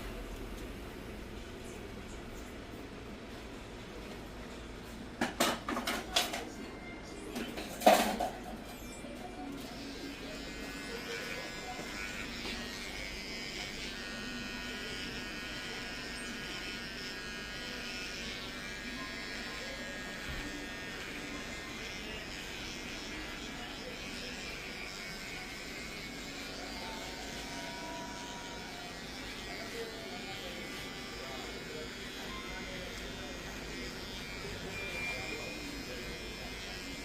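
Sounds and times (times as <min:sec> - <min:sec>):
electric hair clipper running: 0:09.5 - 0:37.0.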